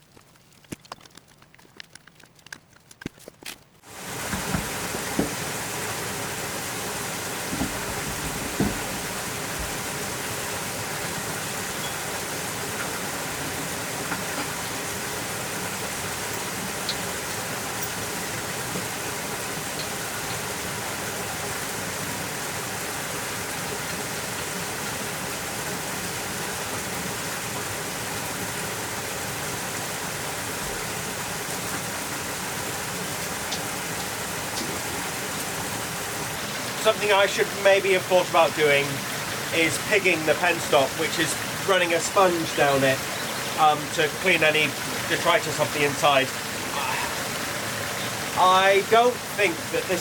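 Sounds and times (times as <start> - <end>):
water rushing: 3.8 - 50.0.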